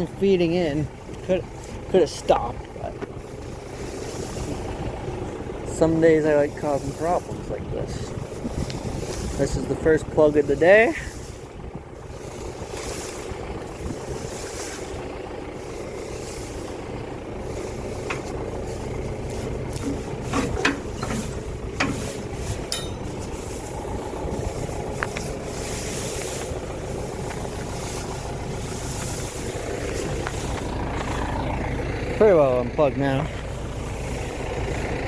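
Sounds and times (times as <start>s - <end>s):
tractor engine running: 0.0s - 35.0s
metal knocks and clanks: 19.8s - 23.6s
brief rattle: 19.8s - 23.7s.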